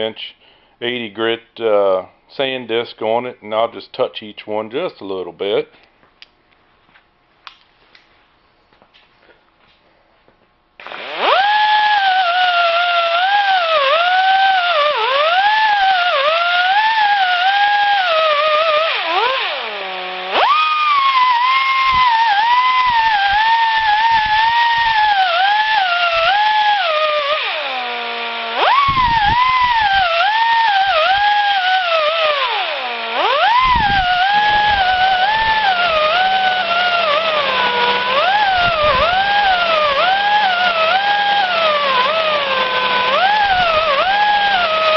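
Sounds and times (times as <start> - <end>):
air grinder whining: 10.8 - 44.9.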